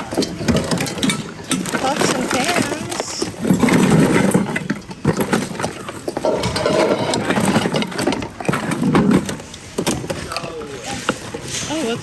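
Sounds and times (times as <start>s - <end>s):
objects knocking and clattering: 0.0s - 12.0s.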